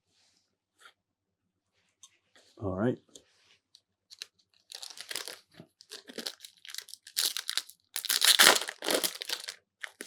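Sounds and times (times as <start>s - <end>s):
foil wrapper crinkling and tearing: 4.7s - 10.0s.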